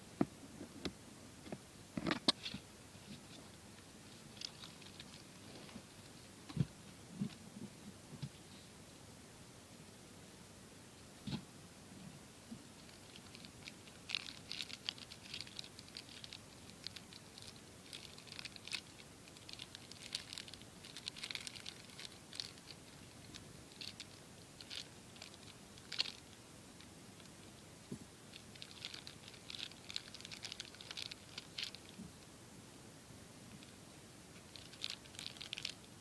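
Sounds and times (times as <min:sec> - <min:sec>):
plastic clicks and crinkling: 0:12.8 - 0:27.4, 0:28.4 - 0:32.0, 0:34.5 - 0:35.8.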